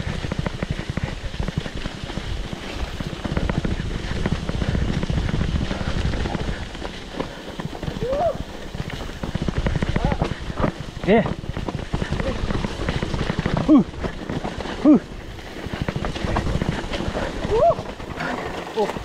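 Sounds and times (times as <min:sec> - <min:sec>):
bike rattling on rocky trail: 0:00.0 - 0:19.0
person crying out: 0:08.0 - 0:08.4.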